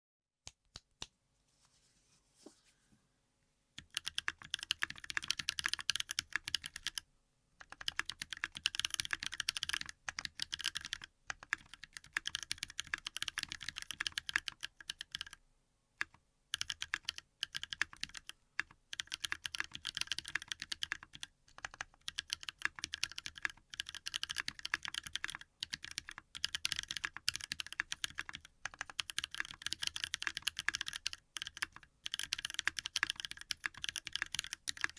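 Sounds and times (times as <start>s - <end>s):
fast typing on mechanical keyboard: 3.8s - 7.0s, 7.6s - 15.4s, 16.0s - 34.9s.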